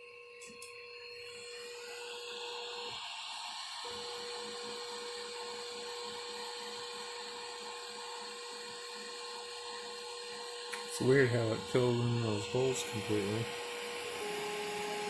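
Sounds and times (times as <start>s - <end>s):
stepper motor whine: 0.0s - 15.0s
fan hiss: 10.3s - 15.0s.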